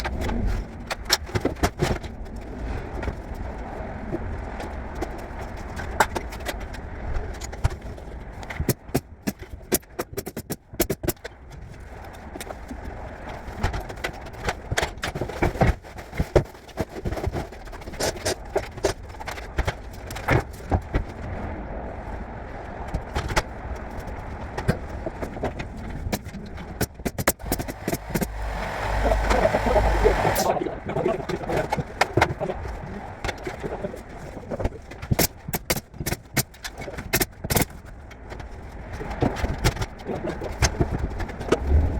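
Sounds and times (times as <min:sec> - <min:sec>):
sharp knocks and clicks: 0:08.5 - 0:11.3, 0:26.1 - 0:28.8
steady low rumble: 0:27.3 - 0:35.0, 0:37.9 - 0:41.9.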